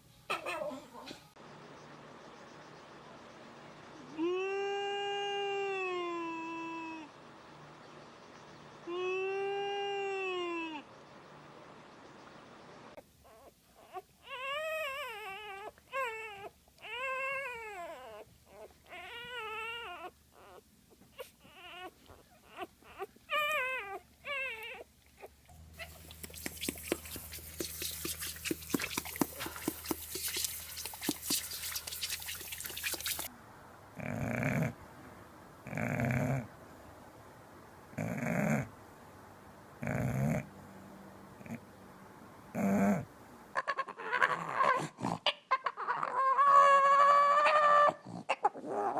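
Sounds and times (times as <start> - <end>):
dog whining: 13.2 - 31.5, 43.6 - 48.9.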